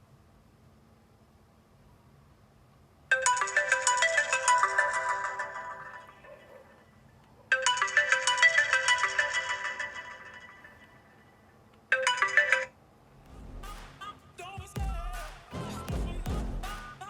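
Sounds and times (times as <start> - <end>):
phone ringtone melody: 3.1 - 6.3, 7.5 - 11.0, 11.9 - 12.8.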